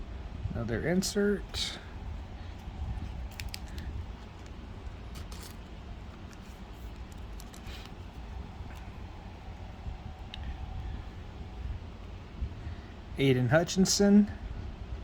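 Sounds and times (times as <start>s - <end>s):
low hum: 0.0s - 13.6s
cards rustling and flicking: 2.3s - 10.8s.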